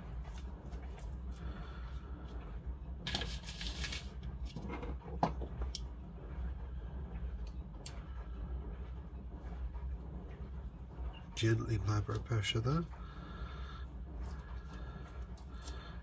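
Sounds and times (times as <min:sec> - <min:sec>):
steady low hum: 0:00.0 - 0:16.0
rustle of handling parts: 0:03.1 - 0:05.1.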